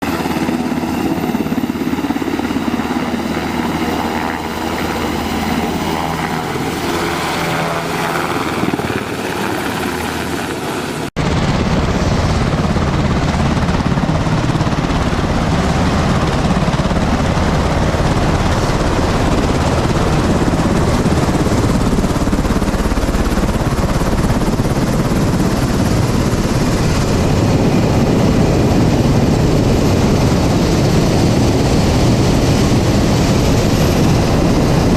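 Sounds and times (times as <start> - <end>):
helicopter engines and rotors droning: 0.0 - 34.9.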